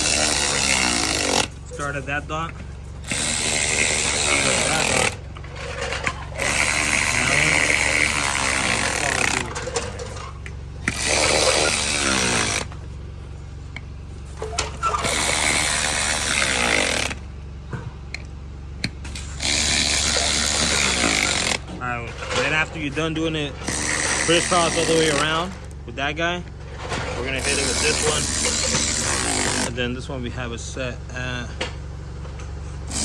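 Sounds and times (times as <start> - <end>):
cordless power tool driving bolts: 0.0 - 12.8, 14.4 - 17.2, 19.1 - 22.9, 23.6 - 25.8, 26.8 - 29.7.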